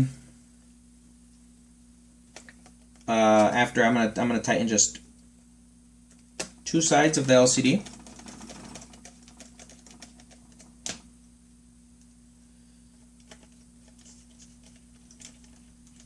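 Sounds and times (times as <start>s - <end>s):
faint steady hum: 0.0s - 16.0s.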